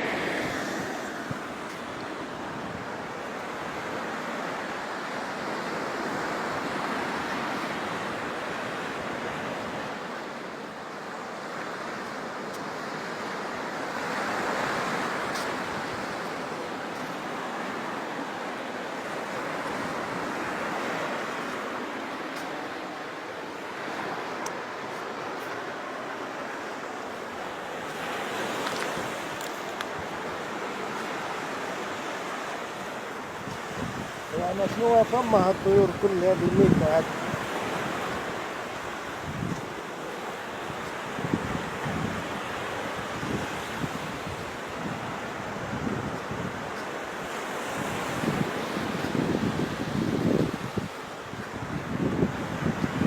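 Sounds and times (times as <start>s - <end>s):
sea surf rushing: 0.0s - 53.0s
wind buffeting microphone: 33.4s - 39.8s, 47.7s - 53.0s.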